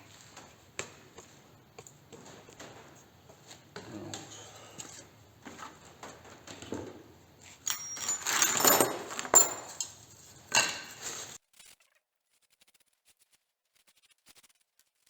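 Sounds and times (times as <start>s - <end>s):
hard objects clinking on workbench: 6.0s - 11.1s.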